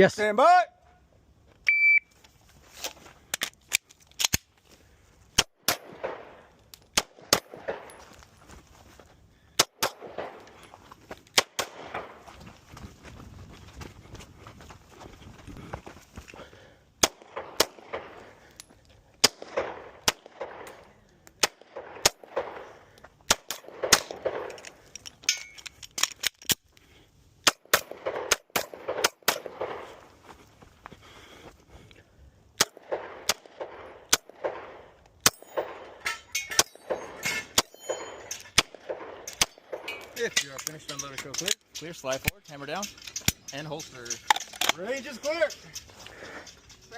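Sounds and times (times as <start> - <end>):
pistol shots: 5.4 - 8.0, 9.6 - 10.5, 11.4 - 12.2, 17.0 - 18.2, 19.2 - 20.8, 21.4 - 24.6, 27.4 - 30.0, 32.6 - 36.0, 36.6 - 40.0.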